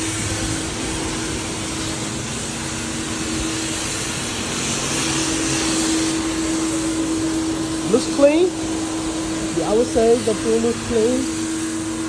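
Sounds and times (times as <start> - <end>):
constant rushing noise: 0.0 - 12.0
mechanical hum: 0.0 - 12.0.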